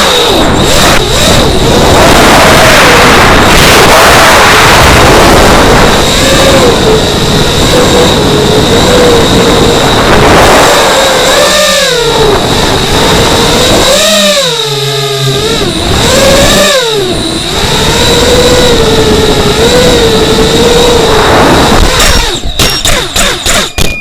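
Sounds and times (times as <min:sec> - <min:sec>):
steady high tone: 0:00.0 - 0:21.8
drone motors whining: 0:00.0 - 0:24.0
sharp knocks: 0:22.0 - 0:24.0.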